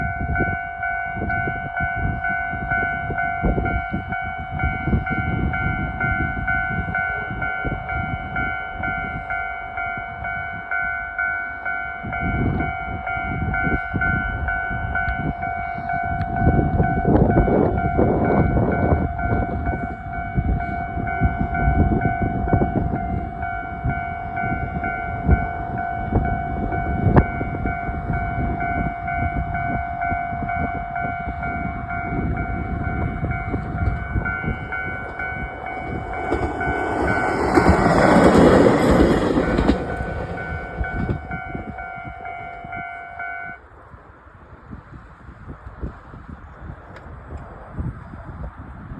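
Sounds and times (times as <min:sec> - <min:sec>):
level-crossing alarm ding-ding: 0:00.0 - 0:43.6
train wheels rumbling and clattering: 0:30.4 - 0:42.6.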